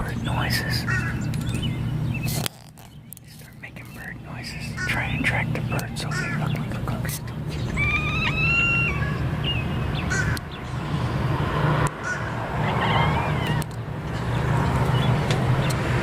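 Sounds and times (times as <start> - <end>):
cat chirping and chattering: 0.0 - 10.4, 12.0 - 13.7
steady low hum: 0.0 - 16.0.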